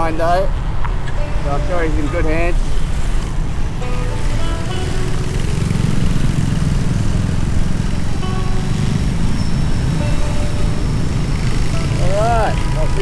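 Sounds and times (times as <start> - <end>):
faint music: 0.0 - 13.0
motorcycle engine rumble: 0.0 - 13.0
wind and road noise: 0.0 - 13.0.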